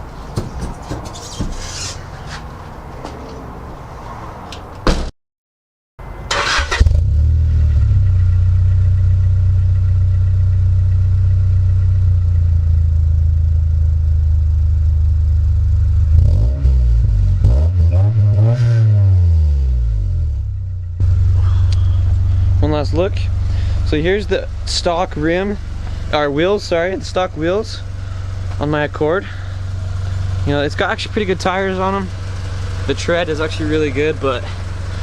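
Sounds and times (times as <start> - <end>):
brief scraping: 0.8 - 2.6
car engine starting and revving: 6.3 - 9.4, 15.8 - 35.0.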